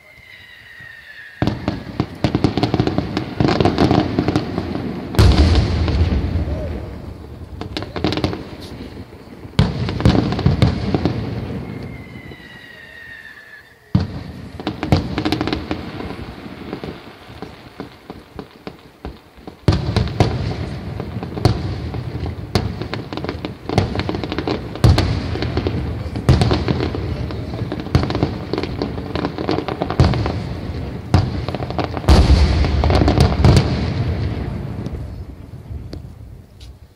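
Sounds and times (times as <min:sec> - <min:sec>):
falling firework whistle: 0:00.0 - 0:09.0, 0:09.8 - 0:17.9
fireworks booming and crackling: 0:00.0 - 0:36.9.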